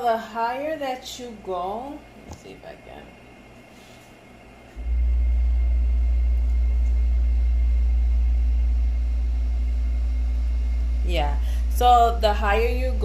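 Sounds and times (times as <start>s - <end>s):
loud steady low hum: 0.0s - 13.0s.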